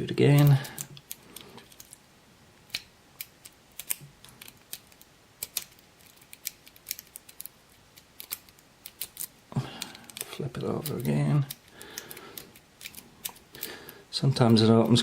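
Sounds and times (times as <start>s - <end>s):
lock pick clicking and scraping: 2.7s - 13.7s.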